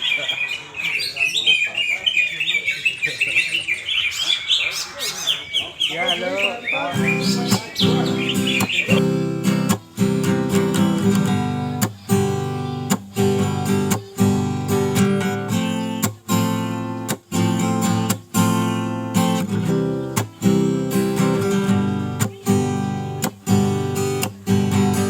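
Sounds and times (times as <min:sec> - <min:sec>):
acoustic guitar strumming chords: 0:06.9 - 0:25.0.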